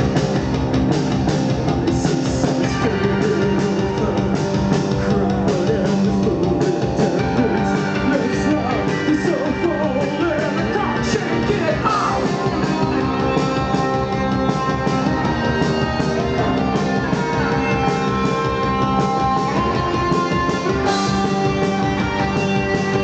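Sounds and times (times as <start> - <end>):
band playing live: 0.0 - 23.0
person singing: 1.6 - 15.6.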